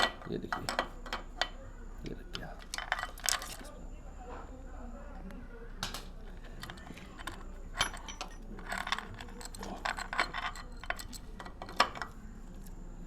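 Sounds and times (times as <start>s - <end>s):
metallic clicks and clinks: 2.3s - 3.8s, 6.3s - 12.2s.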